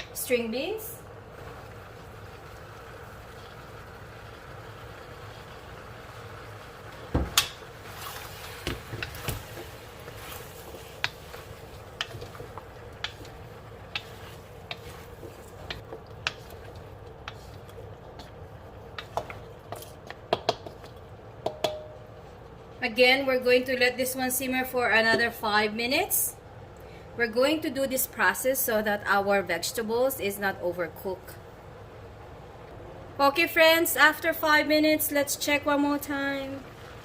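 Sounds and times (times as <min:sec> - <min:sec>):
utensil tapping a cooking pot: 0:07.1 - 0:07.6, 0:10.9 - 0:22.0.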